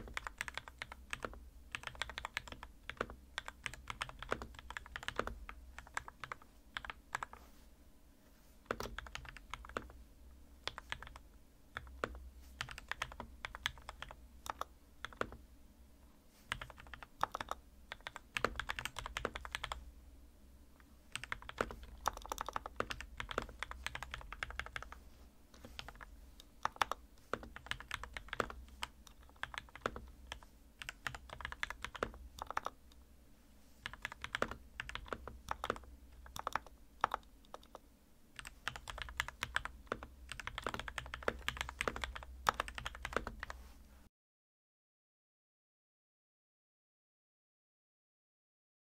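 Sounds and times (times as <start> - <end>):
mechanical keyboard typing: 0.0 - 7.4, 8.7 - 10.0, 10.6 - 11.2, 11.8 - 15.4, 16.5 - 19.8, 21.1 - 25.0, 25.6 - 32.8, 33.8 - 37.8, 38.4 - 43.6.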